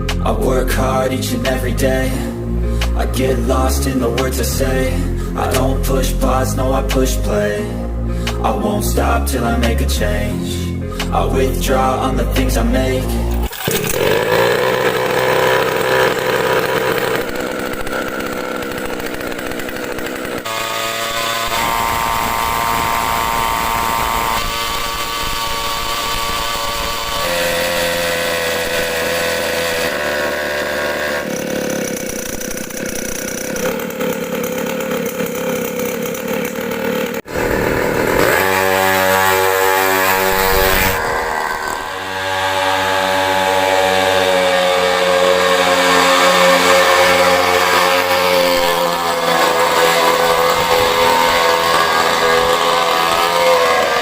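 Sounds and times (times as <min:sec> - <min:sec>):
small engine revving: 0:10.8 - 0:54.0.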